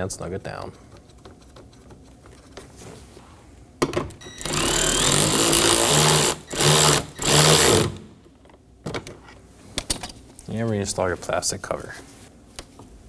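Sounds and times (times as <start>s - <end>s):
cordless power driver running bolt: 4.3s - 8.2s.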